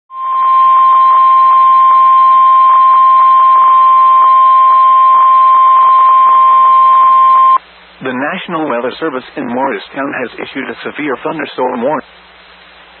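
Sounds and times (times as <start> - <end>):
steady high alarm beep: 0.1 - 7.6.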